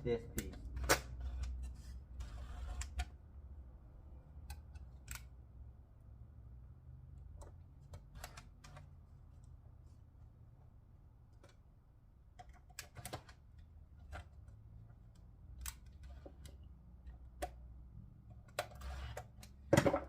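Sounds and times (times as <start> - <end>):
plastic parts clicking and tapping: 12.3 - 20.0.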